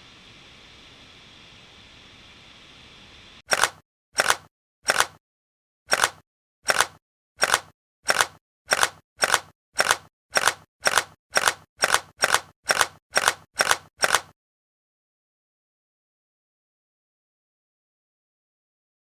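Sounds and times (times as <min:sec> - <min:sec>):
camera shutter clicks: 0:03.5 - 0:05.2, 0:05.9 - 0:14.3.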